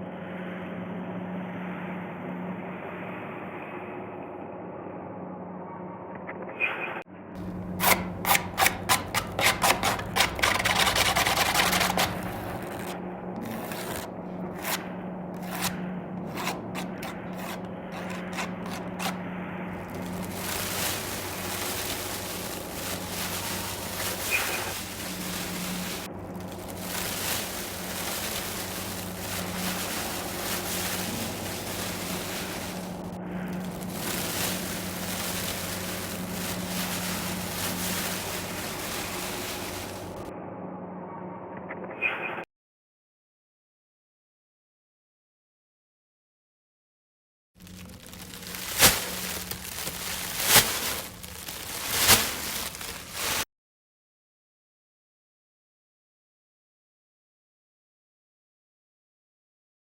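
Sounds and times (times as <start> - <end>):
crackling crinkling noise: 8.6 - 14.8, 15.4 - 19.2, 19.8 - 40.3, 47.6 - 53.5.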